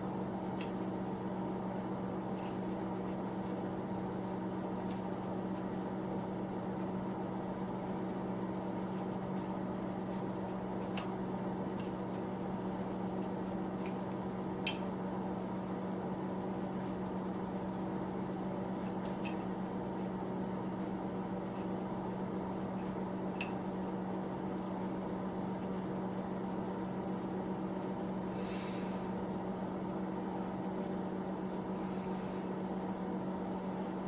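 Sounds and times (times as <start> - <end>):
space heater humming: 0.0 - 34.0.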